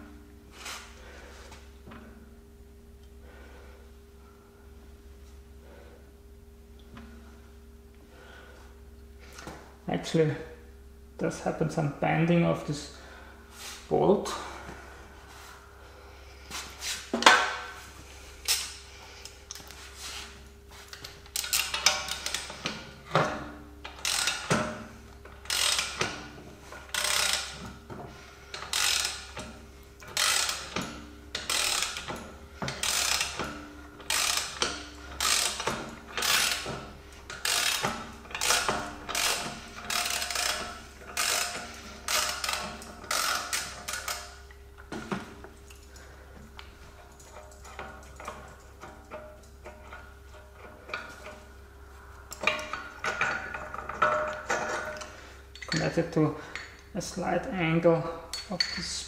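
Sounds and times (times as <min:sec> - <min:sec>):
ratchet wrench clicking: 0:20.9 - 0:22.7, 0:23.9 - 0:26.3, 0:26.9 - 0:27.7, 0:28.5 - 0:44.4.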